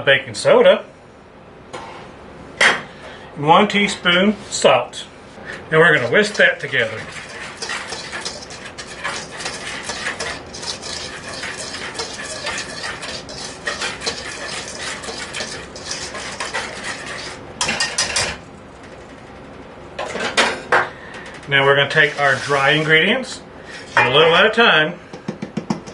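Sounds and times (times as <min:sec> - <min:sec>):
wire whisk stirring in bowl: 0:05.7 - 0:18.4, 0:21.6 - 0:23.0.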